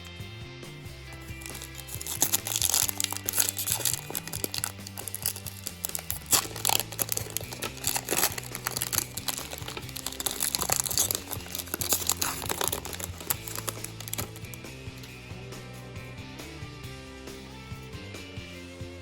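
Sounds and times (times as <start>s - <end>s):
background music: 0.0s - 19.0s
wrapper crinkling and tearing: 1.1s - 14.6s.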